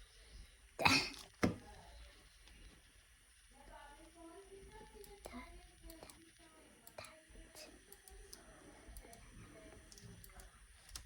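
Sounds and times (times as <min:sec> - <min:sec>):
child singing softly: 0:03.6 - 0:10.6.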